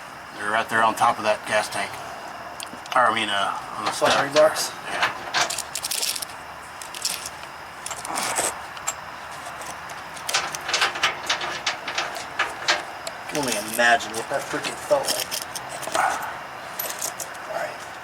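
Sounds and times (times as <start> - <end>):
metal hardware clinking: 3.8 - 17.4.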